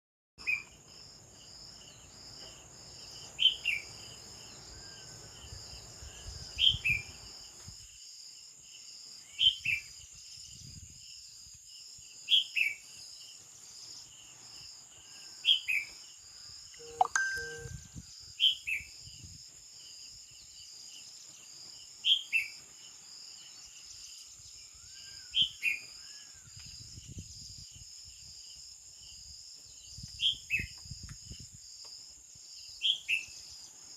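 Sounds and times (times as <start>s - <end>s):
crickets chorus: 0.4s - 16.9s, 17.6s - 33.9s
songbird two-note call: 16.8s - 17.8s.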